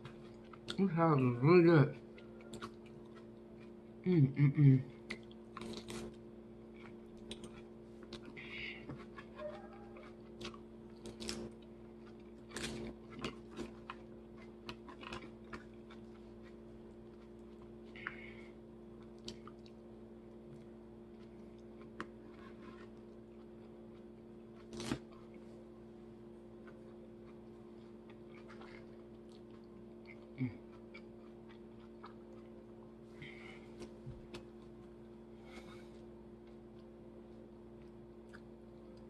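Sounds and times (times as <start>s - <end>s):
person chewing salad: 0.0s - 4.1s, 4.9s - 25.7s, 26.4s - 39.0s
steady low hum: 0.0s - 39.0s.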